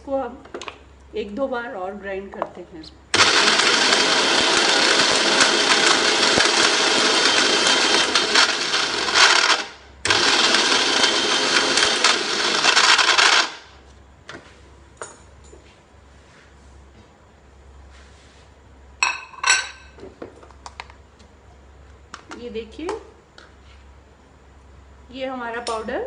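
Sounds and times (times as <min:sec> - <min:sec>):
mixer grinder running: 0:03.1 - 0:13.8.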